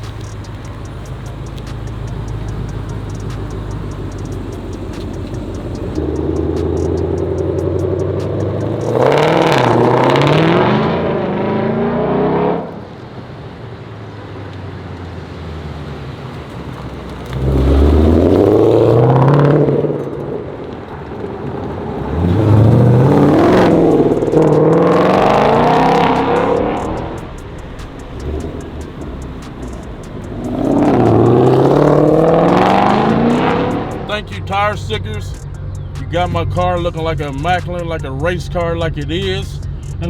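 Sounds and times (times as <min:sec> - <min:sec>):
car engine accelerating hard: 0:00.0 - 0:40.0.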